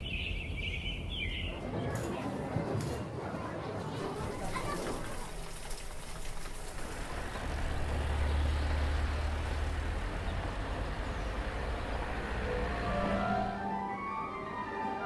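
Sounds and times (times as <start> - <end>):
heavy road vehicle rumble: 4.1 - 15.0.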